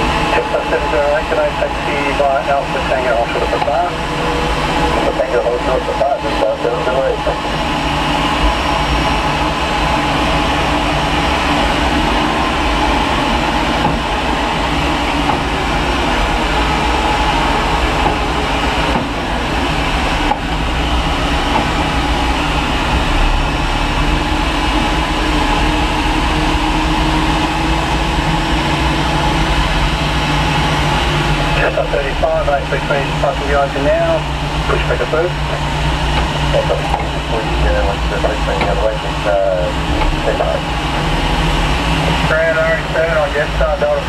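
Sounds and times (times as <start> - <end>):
jet turbine whine and rumble: 0.0 - 44.0.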